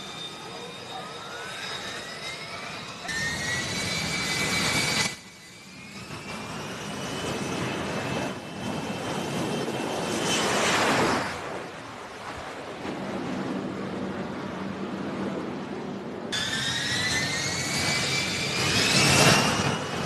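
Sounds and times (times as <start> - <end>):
jet engine roar with whine: 0.0 - 20.0.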